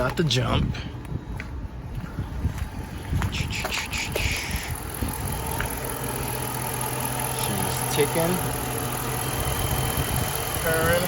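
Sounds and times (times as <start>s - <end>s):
car engine idling: 2.2s - 11.0s.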